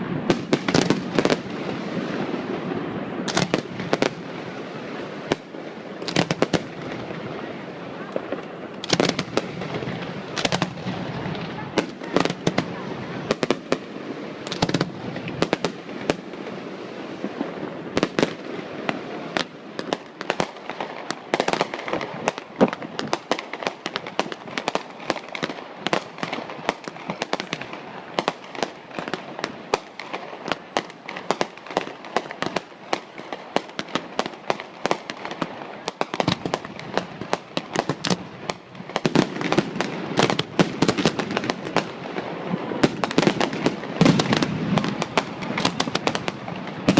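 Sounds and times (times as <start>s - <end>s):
fireworks bangs and crackles: 0.0s - 46.9s.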